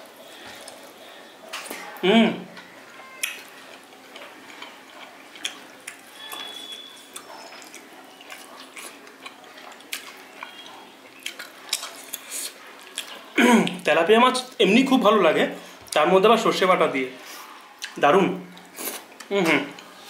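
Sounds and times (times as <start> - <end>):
wet chewing and mouth smacks: 3.2 - 13.9.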